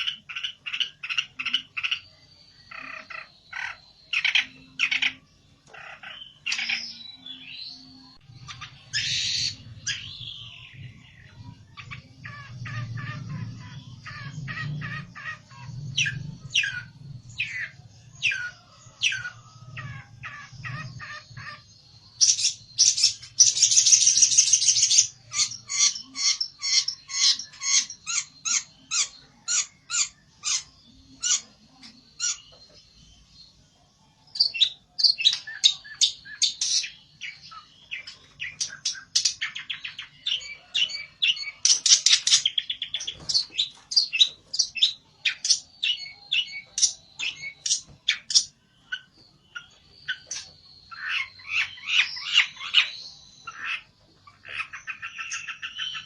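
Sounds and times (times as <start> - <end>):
bird scolding chatter: 0.0 - 7.2, 8.3 - 32.9
songbird calling sharp notes: 0.0 - 33.2.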